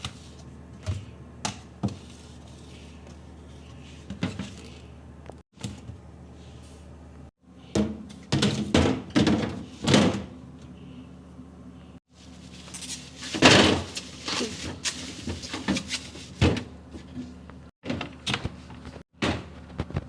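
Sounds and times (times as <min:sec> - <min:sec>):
items knocking and clattering: 0:07.8 - 0:10.3, 0:13.3 - 0:20.0.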